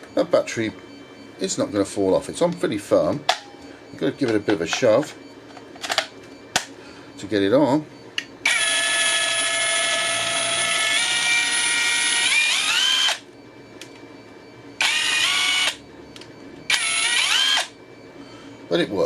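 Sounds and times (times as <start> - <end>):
impact driver motor whine: 8.4 - 13.3, 14.8 - 15.8, 16.6 - 17.8.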